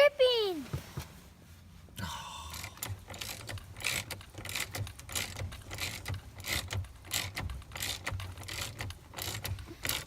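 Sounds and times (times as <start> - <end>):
socket ratchet clicking: 2.6 - 10.0.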